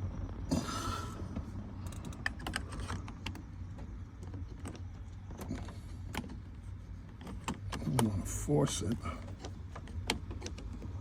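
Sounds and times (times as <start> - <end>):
steady low hum: 0.0 - 11.0
shift knob clicking and tapping: 5.5 - 8.2.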